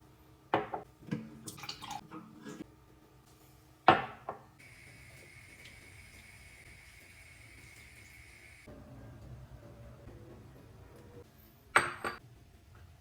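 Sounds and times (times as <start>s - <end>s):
dishes clinking and knocking: 0.6s - 2.6s, 3.9s - 4.4s, 11.8s - 12.2s
faint steady hum: 4.6s - 10.0s.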